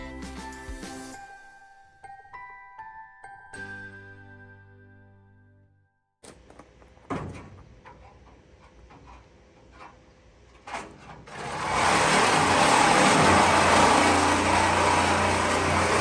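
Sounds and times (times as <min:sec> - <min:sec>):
knocks: 0:06.2 - 0:14.1.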